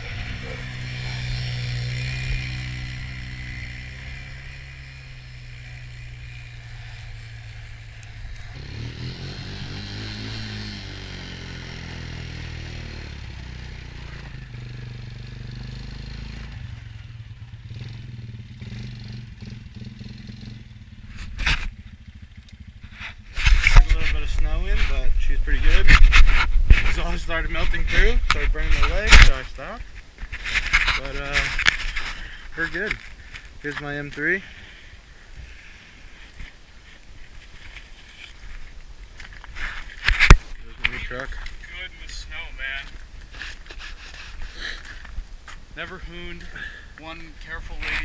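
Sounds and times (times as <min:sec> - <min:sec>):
quad engine revving: 0:00.0 - 0:21.7
snow and wind hiss: 0:22.9 - 0:47.2.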